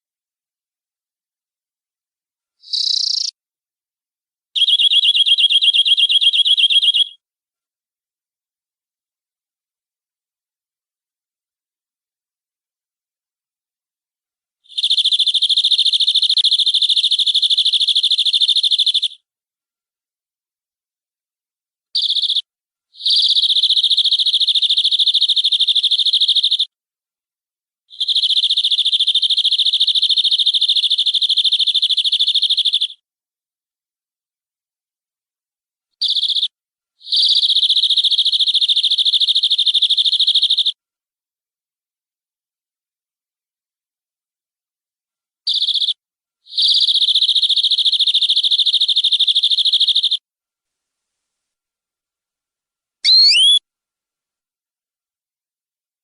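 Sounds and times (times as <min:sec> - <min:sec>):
canary singing trills: 0:02.6 - 0:03.3, 0:04.6 - 0:07.2, 0:53.0 - 0:53.6.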